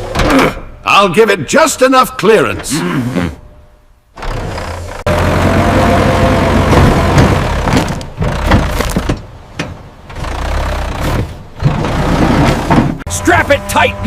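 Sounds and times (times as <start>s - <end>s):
machine engine rumble: 2.6s - 14.0s
knocks and clanks: 6.6s - 13.1s.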